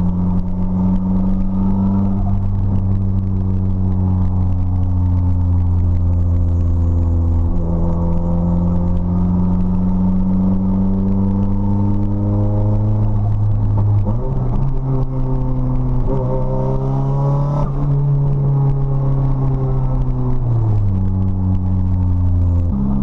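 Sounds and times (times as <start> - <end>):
turbocharged car engine: 0.0 - 23.0.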